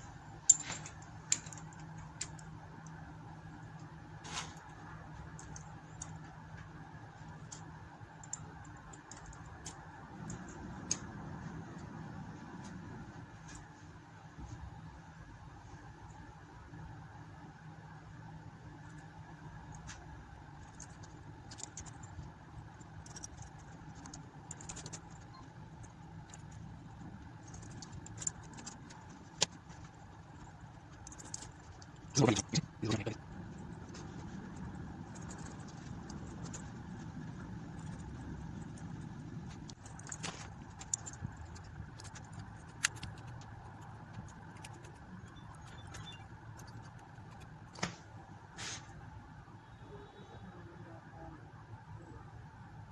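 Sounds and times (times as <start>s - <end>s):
steady low hum: 0.0s - 52.9s
small metal parts clinking: 0.4s - 2.5s, 5.3s - 6.3s, 7.3s - 11.1s, 20.6s - 37.1s, 37.7s - 43.4s.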